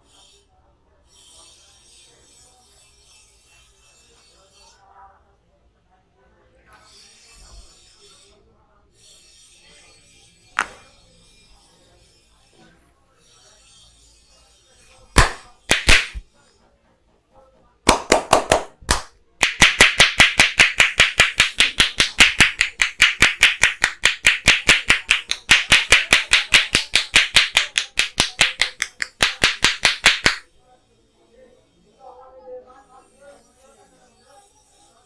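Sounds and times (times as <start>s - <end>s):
hands slapping on head: 10.6s - 10.8s, 15.2s - 16.2s, 17.9s - 30.5s.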